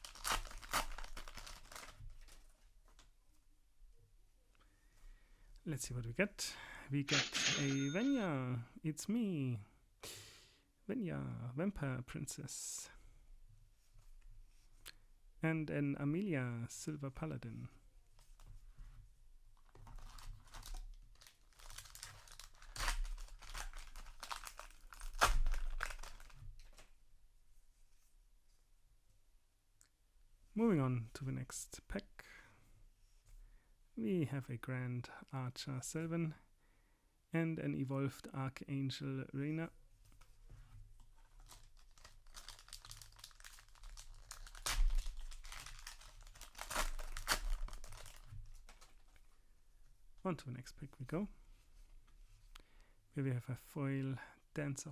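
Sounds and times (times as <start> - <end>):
wrapper ripping: 0.0 - 3.0, 19.6 - 26.9, 41.2 - 49.2
wrapper crinkling: 0.0 - 3.1, 19.6 - 26.9, 41.0 - 49.3.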